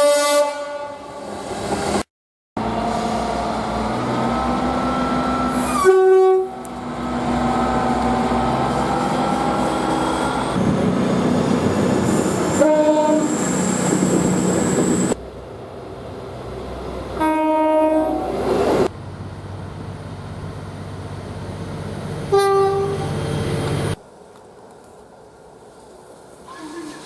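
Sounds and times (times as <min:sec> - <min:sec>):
train air horn blasts: 0:00.0 - 0:01.3, 0:05.4 - 0:06.6, 0:12.6 - 0:13.4, 0:17.2 - 0:18.3, 0:22.3 - 0:23.1
train running noise: 0:02.6 - 0:27.0.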